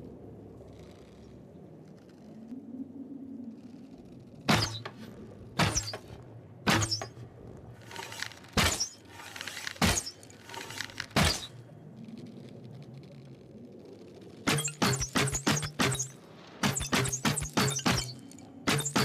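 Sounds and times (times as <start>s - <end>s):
longbow shot crack: 7.9s - 11.7s.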